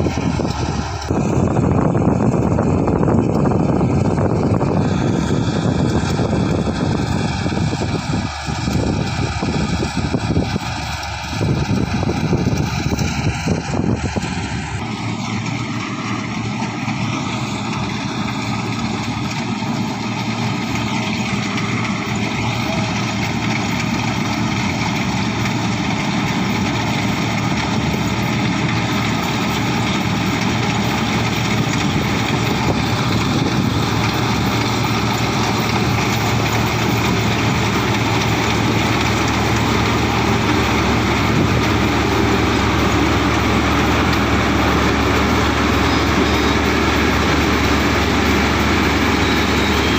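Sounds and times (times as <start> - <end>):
combine harvester running: 0.0 - 49.9.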